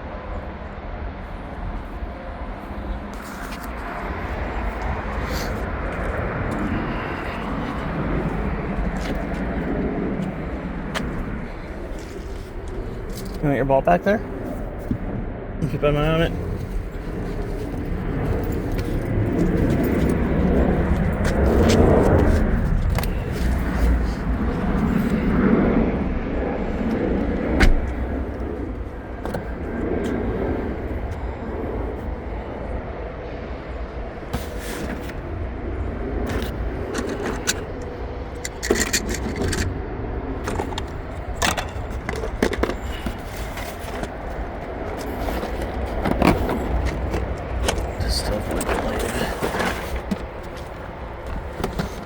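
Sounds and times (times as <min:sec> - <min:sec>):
steady low rumble: 0:00.0 - 0:52.0
objects clicking and scraping: 0:36.2 - 0:39.7, 0:40.4 - 0:52.0.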